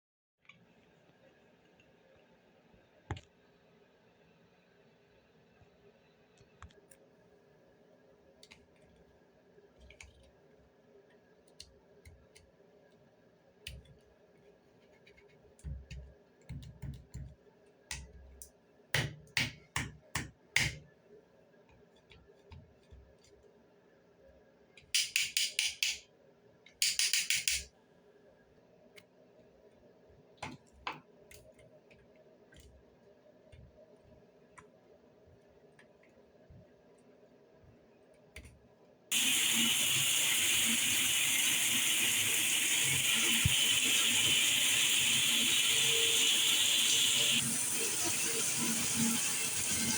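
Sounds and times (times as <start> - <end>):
small clicks and knocks: 24.8 - 27.8
short bursts of hiss: 39.1 - 47.9.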